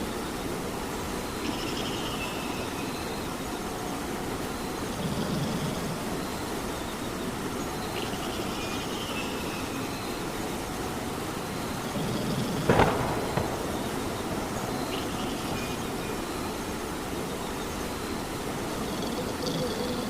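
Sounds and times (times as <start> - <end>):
steady rain falling: 0.0 - 20.0
sudden loud crack: 12.6 - 16.0.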